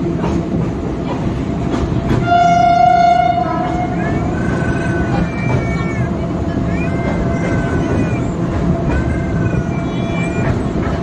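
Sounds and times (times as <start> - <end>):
train rumbling on track: 0.0 - 11.0
train horn: 2.2 - 4.1.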